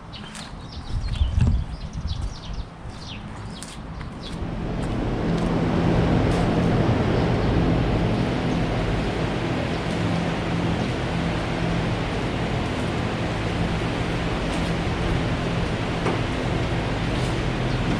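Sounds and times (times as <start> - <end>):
wind rush: 0.7 - 3.2, 3.9 - 17.9
motorcycle engine running: 4.3 - 17.9.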